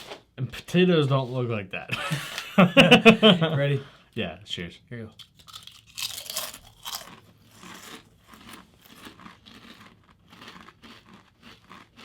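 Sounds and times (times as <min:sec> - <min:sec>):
potato chips crunching: 0:05.2 - 0:12.0.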